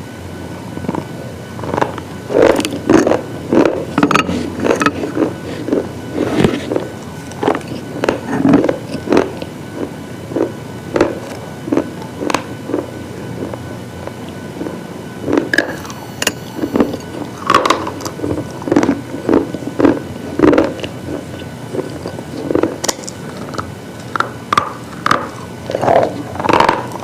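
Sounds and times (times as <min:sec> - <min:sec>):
brittle cubes crunching: 0:10.3 - 0:27.0.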